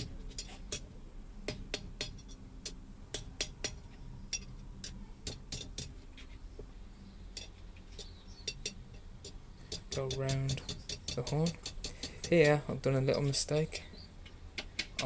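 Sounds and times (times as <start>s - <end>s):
hammer striking iron on anvil: 1.5s - 5.9s, 8.5s - 12.6s.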